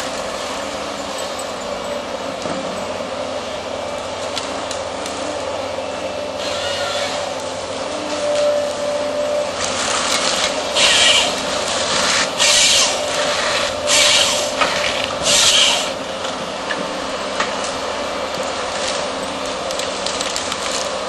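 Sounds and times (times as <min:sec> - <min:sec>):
machine running steadily: 0:00.0 - 0:21.0
rasping bursts of wood noise: 0:06.4 - 0:07.4, 0:09.8 - 0:16.0.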